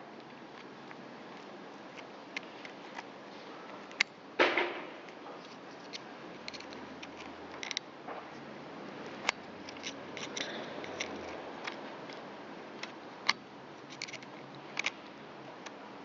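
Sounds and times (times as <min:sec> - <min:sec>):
screwdriver scraping metal ring: 0:09.6 - 0:11.4.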